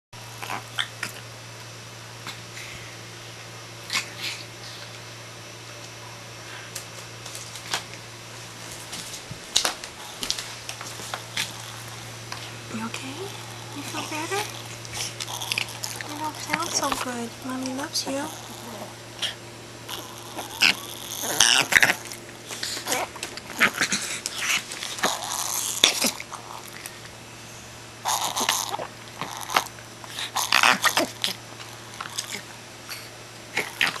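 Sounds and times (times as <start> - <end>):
steady low hum: 0.2 - 34.0
dog snorting and rasping: 10.0 - 27.0, 28.0 - 34.0.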